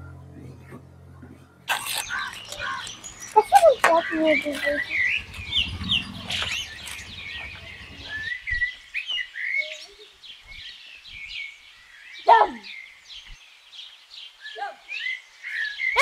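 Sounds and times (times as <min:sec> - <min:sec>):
small birds chirping: 0:00.0 - 0:16.0
low rumble: 0:04.0 - 0:08.7.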